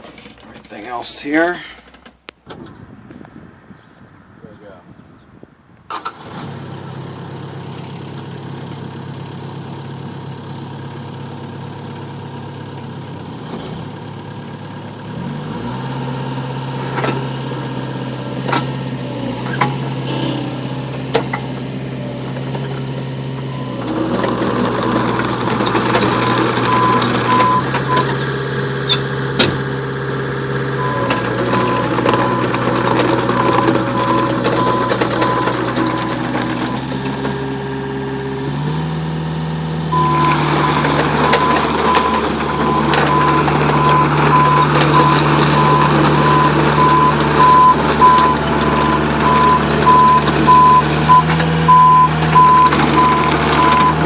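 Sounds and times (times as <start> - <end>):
excavator diesel engine: 5.9 - 54.0
high pulsing beep: 30.8 - 32.5, 40.0 - 54.0.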